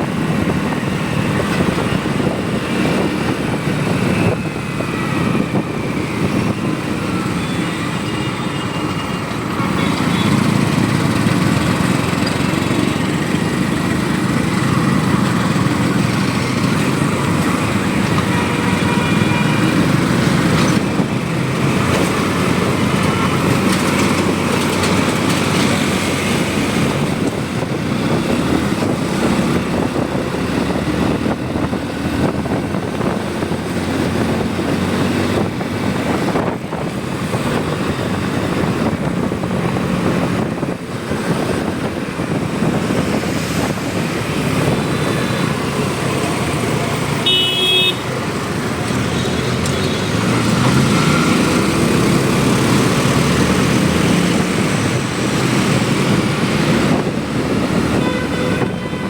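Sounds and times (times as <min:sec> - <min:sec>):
motorcycle engine and road noise: 0:00.0 - 0:59.0
vehicle horn honk: 0:18.4 - 0:19.9, 0:47.2 - 0:48.1, 0:58.0 - 0:59.0.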